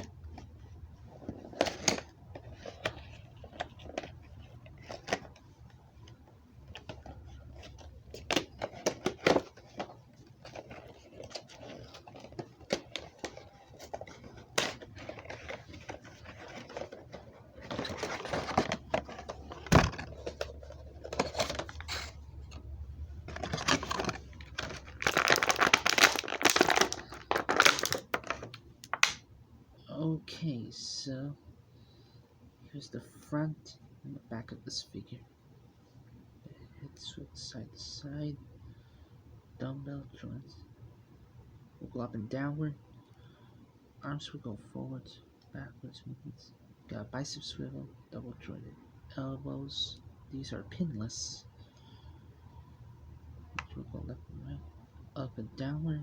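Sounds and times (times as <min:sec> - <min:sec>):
packaging clicks and knocks: 0:06.7 - 0:22.6, 0:23.2 - 0:29.2
cardboard and plastic crinkling: 0:06.7 - 0:29.1.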